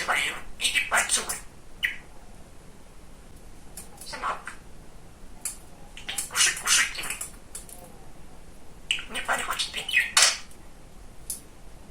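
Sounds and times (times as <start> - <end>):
budgerigar chattering: 0.0 - 2.1, 4.0 - 4.6, 6.0 - 7.3, 8.9 - 10.5.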